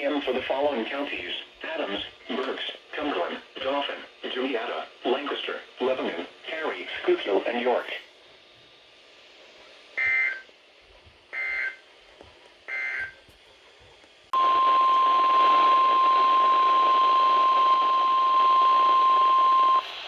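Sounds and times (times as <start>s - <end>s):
receiver hiss: 0.0s - 10.7s, 11.3s - 20.0s
steady warning alarm tone: 10.0s - 10.4s, 11.3s - 11.8s, 12.7s - 13.2s, 14.4s - 19.9s.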